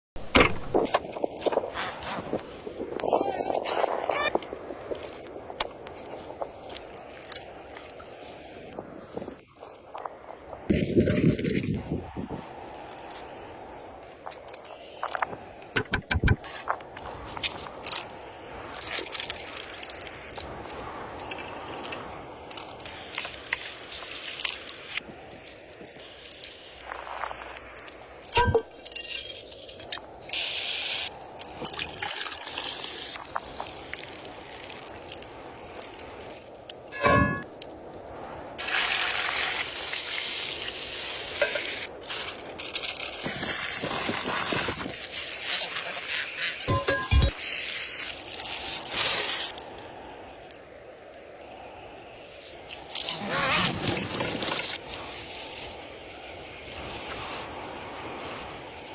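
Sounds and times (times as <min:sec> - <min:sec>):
steady hiss: 0:04.5 - 0:58.9
sharp knocks: 0:15.8 - 0:16.4.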